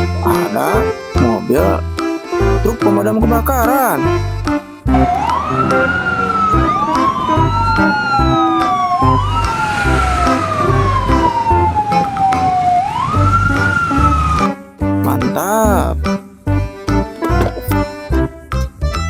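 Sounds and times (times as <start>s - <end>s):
backing music: 0.0s - 19.0s
fire truck siren wailing: 4.8s - 15.8s.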